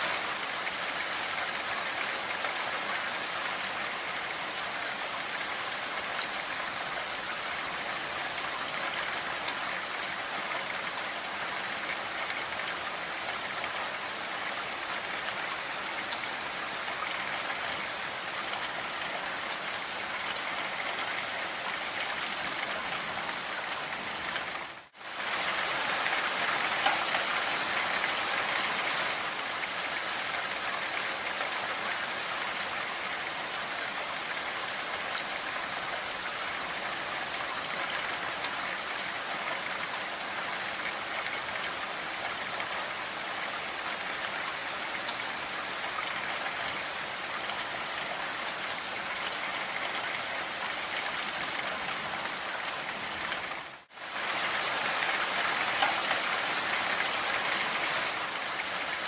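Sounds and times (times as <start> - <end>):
rain falling: 0.0 - 59.0.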